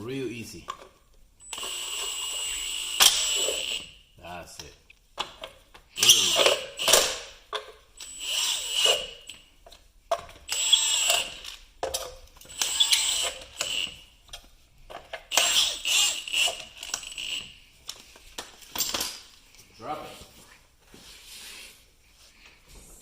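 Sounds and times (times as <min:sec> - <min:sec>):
power tool whining: 0:01.4 - 0:04.0, 0:06.0 - 0:07.3, 0:08.0 - 0:09.4, 0:10.4 - 0:11.6, 0:12.4 - 0:14.0, 0:15.3 - 0:17.6.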